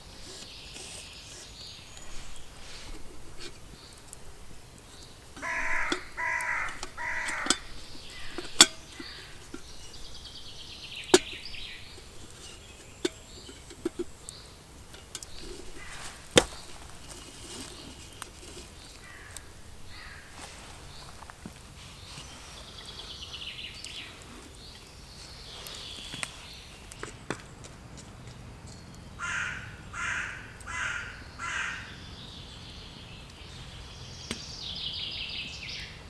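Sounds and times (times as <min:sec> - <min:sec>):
crow cawing: 0:05.4 - 0:08.3, 0:19.0 - 0:20.3, 0:29.2 - 0:32.0.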